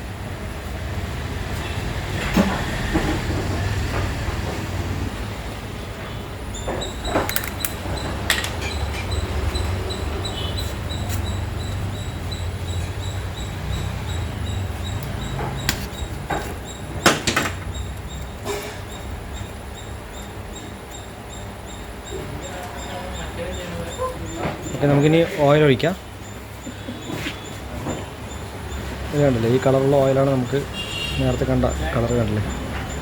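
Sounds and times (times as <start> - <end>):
hand tools knocking and clinking: 6.6 - 9.6.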